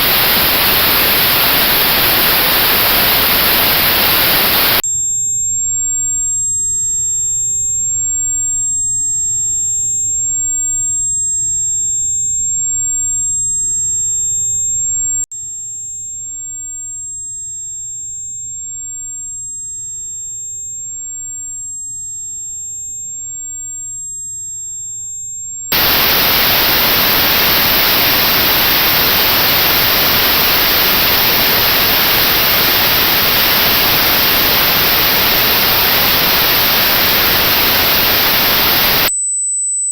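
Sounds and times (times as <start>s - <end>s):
loud notched white noise: 0.0s - 4.8s, 25.7s - 39.1s
low hiss: 0.0s - 4.8s, 25.8s - 39.1s
high-pitched test tone: 25.7s - 39.1s
fainter tones: 25.8s - 39.1s.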